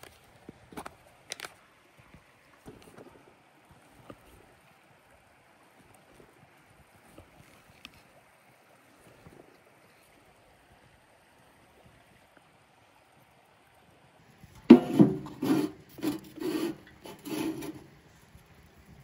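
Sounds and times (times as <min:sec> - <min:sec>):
rasping scraping strokes: 0:14.6 - 0:17.9.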